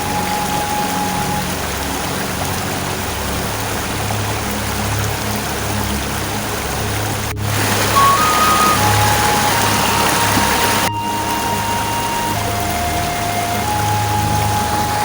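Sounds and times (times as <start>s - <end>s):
low sustained music notes: 0.0s - 15.0s
rushing water: 0.0s - 15.0s.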